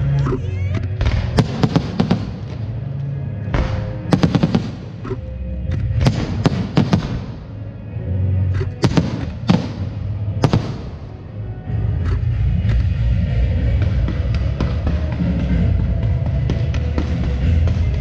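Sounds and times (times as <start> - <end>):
background music: 0.0 - 18.0
fireworks bangs: 1.0 - 2.9, 3.6 - 5.0, 6.0 - 7.6, 8.8 - 11.3
fireworks crackling: 1.0 - 3.1, 3.8 - 5.0, 6.0 - 7.7, 8.8 - 11.3.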